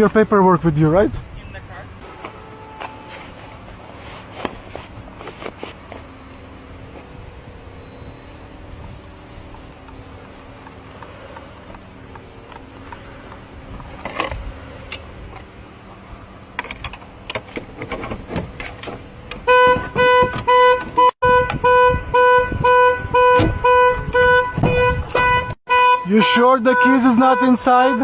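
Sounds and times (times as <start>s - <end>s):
car alarm horn honking: 19.4s - 28.0s.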